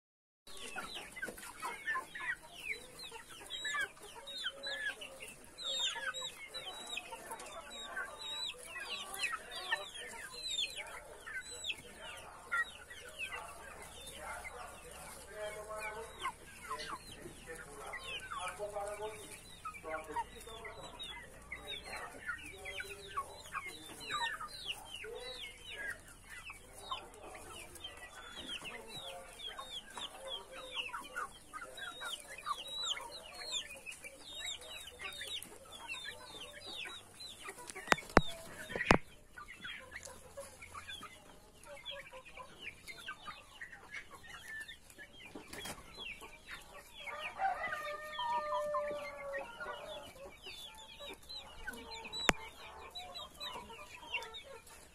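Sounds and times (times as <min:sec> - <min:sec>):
chickens clucking: 0:00.5 - 0:54.9
rooster crowing: 0:47.2 - 0:49.4.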